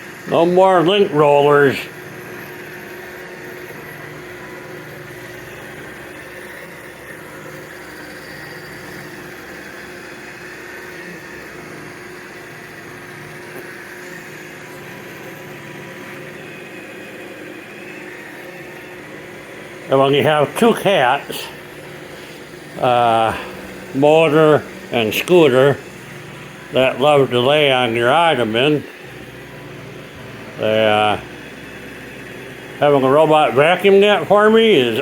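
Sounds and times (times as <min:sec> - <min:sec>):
robot vacuum whirring: 0:00.0 - 0:35.0.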